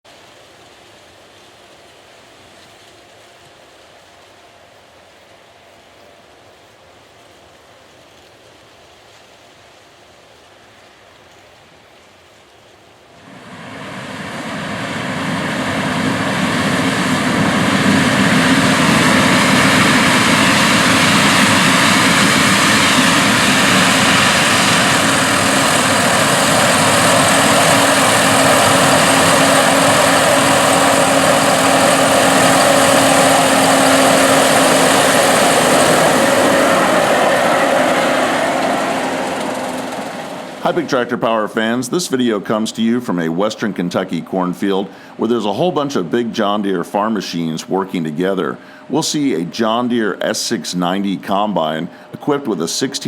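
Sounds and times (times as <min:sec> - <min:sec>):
diesel farm machinery running: 0:13.2 - 0:53.0.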